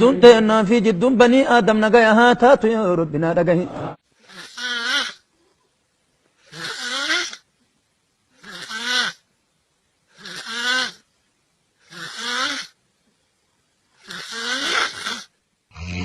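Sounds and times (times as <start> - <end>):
person snoring: 8.4 - 9.2, 10.1 - 11.0, 11.8 - 12.8, 14.0 - 16.0.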